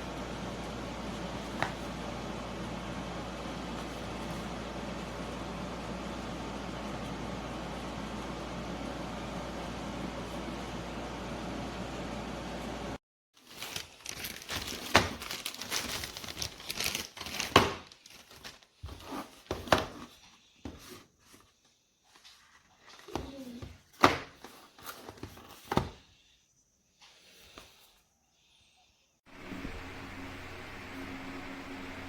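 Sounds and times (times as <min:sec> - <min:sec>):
packaging crinkling and rustling: 0:13.4 - 0:20.0.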